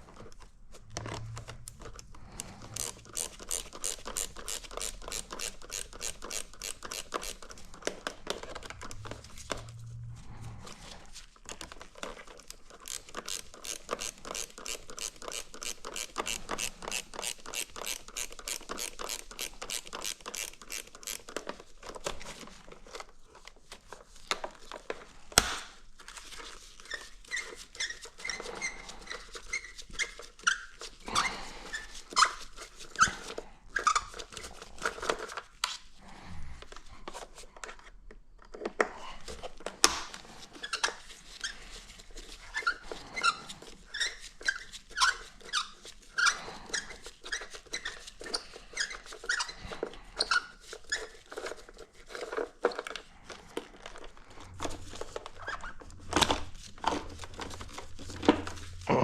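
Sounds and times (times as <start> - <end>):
hand ratchet clicking: 2.7 - 7.5, 12.9 - 21.3
parts being handled: 36.6 - 58.9.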